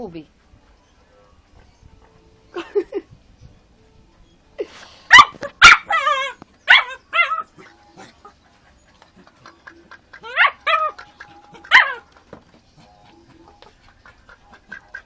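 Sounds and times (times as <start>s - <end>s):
dog barking and yipping: 5.1s - 15.0s.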